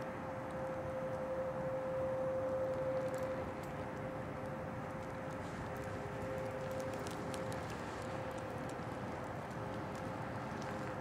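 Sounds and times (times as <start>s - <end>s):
faint lower siren tone: 0.0s - 10.3s
background noise: 0.0s - 11.0s
distant tornado warning sirens: 0.0s - 11.0s
faint clicks: 2.5s - 11.0s.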